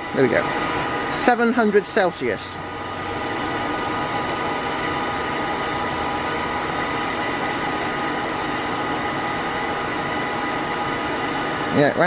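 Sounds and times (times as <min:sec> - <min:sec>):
furnace rushing noise: 0:00.0 - 0:05.3
thin steady whine: 0:00.0 - 0:12.0.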